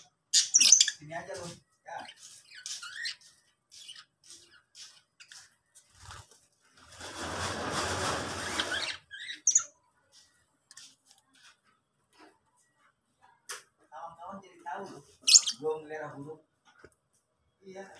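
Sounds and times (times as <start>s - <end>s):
lovebirds chirping: 0.0s - 6.3s, 8.4s - 10.5s, 15.2s - 16.2s.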